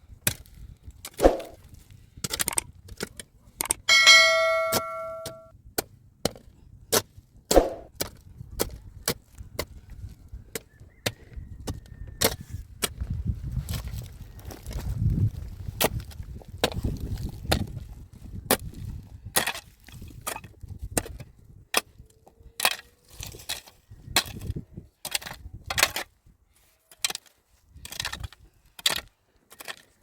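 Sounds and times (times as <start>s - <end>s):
pickaxe striking stone and earth: 1.1s - 1.6s, 3.9s - 5.4s, 7.5s - 7.9s
metallic ringing strike: 3.9s - 5.5s.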